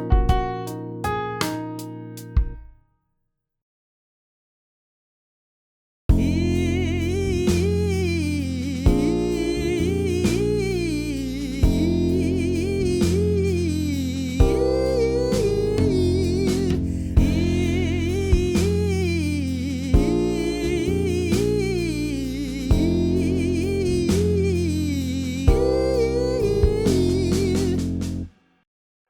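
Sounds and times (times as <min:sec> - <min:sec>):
guitar and bass backing track: 0:06.1 - 0:13.8, 0:14.4 - 0:28.3
person singing vocal runs: 0:06.2 - 0:28.0.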